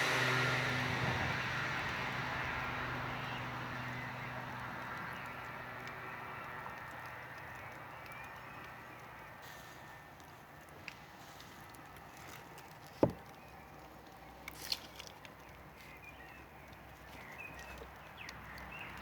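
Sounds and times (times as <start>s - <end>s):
vehicle engine passing: 0.0s - 7.9s
campfire crackling: 0.0s - 19.0s.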